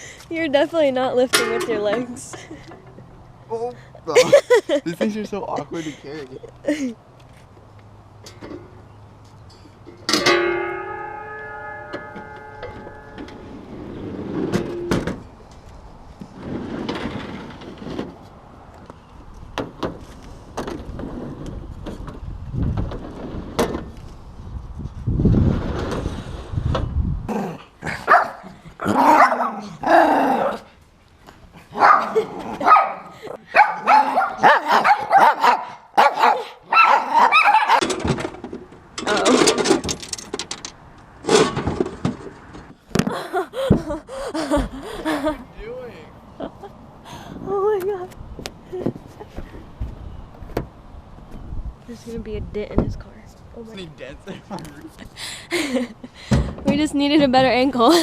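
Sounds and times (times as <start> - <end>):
rattling scraping noise: 9.5 - 15.3, 16.2 - 18.3, 25.2 - 26.9, 37.8 - 42.8
dog barking: 28.1 - 28.4, 29.0 - 29.6, 31.8 - 37.8.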